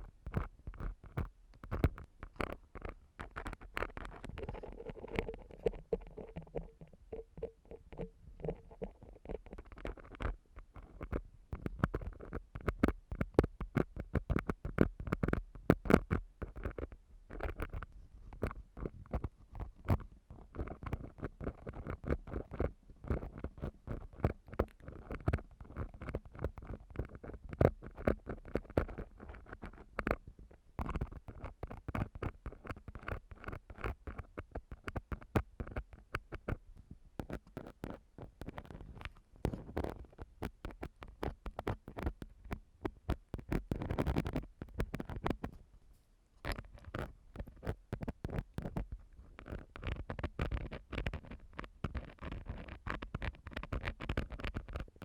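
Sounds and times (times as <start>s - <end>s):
ear pick scraping microphone: 0.2s - 12.4s, 37.2s - 54.9s.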